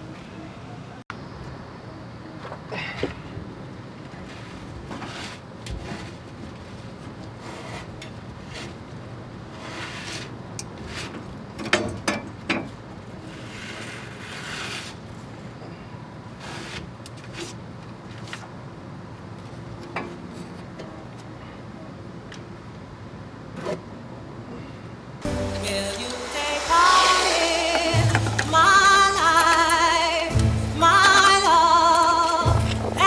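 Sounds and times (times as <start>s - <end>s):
hands rubbing and scraping parts: 25.2s - 33.0s
metal clanks: 25.2s - 33.0s
steady low hum: 25.2s - 33.0s.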